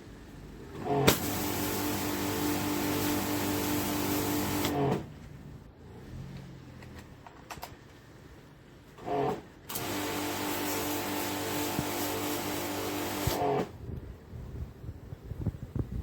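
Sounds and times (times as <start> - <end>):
engine hum: 0.0 - 9.8
pressure washer spraying: 0.8 - 5.1, 9.1 - 13.7.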